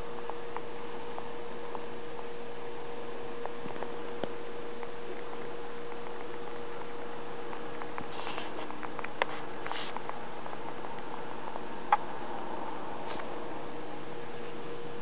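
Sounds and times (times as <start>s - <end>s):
faint hum: 0.0s - 15.0s
steady hiss: 0.0s - 15.0s.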